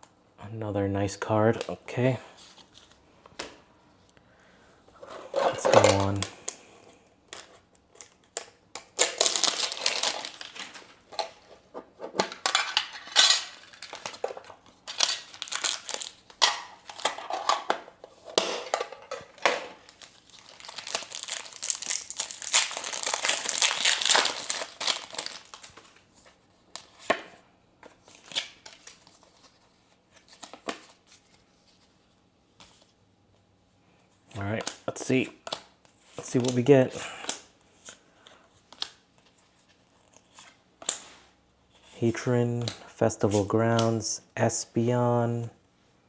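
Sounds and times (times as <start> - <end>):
foil wrapper crinkling and tearing: 8.0 - 11.0, 12.8 - 17.2, 19.7 - 26.0.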